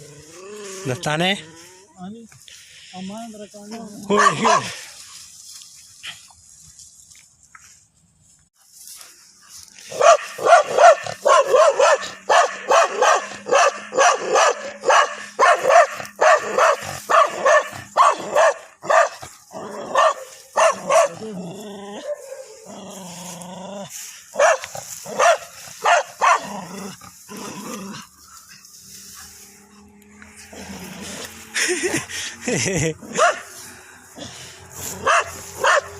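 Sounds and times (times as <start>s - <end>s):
drawn-out low dog sound: 3.8s - 5.2s, 8.6s - 32.4s, 33.0s - 35.9s
dog barking rapidly: 4.1s - 4.8s, 9.9s - 21.2s, 24.3s - 26.6s, 33.1s - 33.5s, 35.0s - 35.9s.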